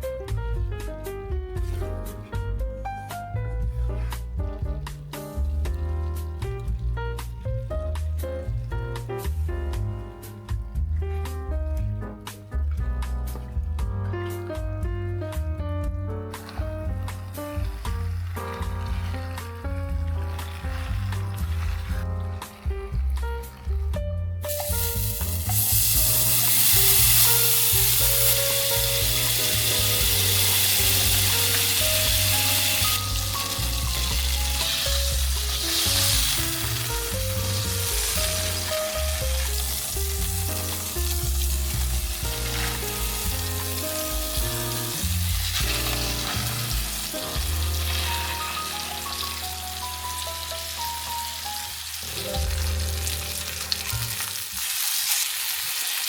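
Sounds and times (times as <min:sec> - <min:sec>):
soft background music: 0:00.0 - 0:56.0
food sizzling in a pan: 0:17.3 - 0:22.8, 0:24.4 - 0:56.0.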